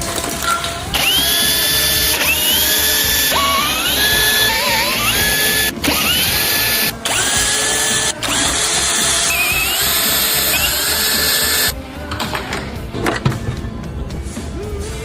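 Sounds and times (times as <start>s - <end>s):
cordless power tool whining: 1.0s - 11.7s.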